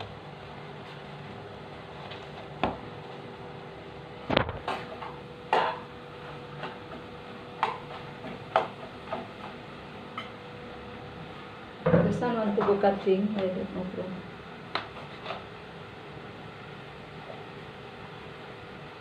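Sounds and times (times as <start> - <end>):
steady low hum: 0.0 - 19.0
utensils and dishes clacking: 4.6 - 5.9.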